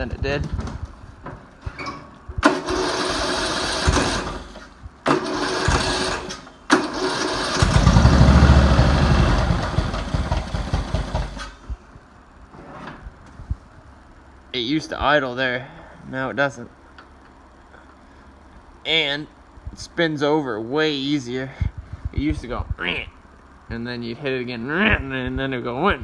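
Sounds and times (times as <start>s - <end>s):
starter turning engine over: 2.4s - 11.6s
mower engine running: 2.4s - 11.7s.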